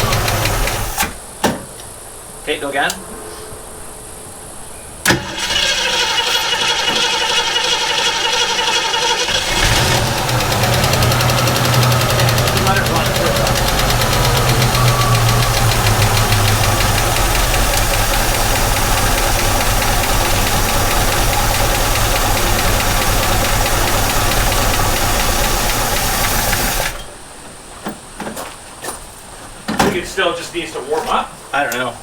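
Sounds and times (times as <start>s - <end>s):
car engine running: 0.0s - 1.1s, 5.2s - 27.1s.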